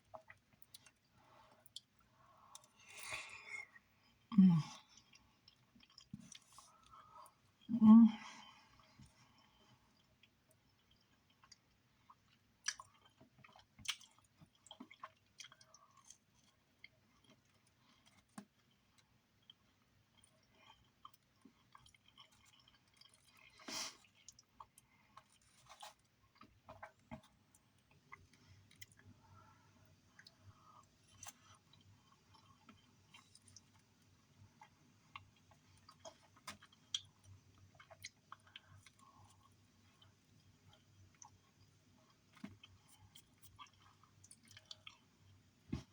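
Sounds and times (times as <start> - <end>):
person eating with clicks and smacks: 0.0 - 7.7, 8.7 - 29.2, 29.8 - 45.9
person chewing: 1.6 - 7.4, 9.4 - 18.8, 19.4 - 27.3, 34.5 - 45.1.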